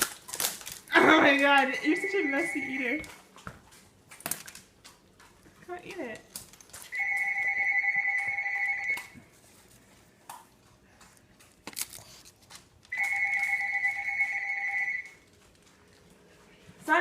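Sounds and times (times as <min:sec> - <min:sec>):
telephone ringing: 0:01.8 - 0:03.1, 0:06.9 - 0:09.2, 0:12.9 - 0:15.1.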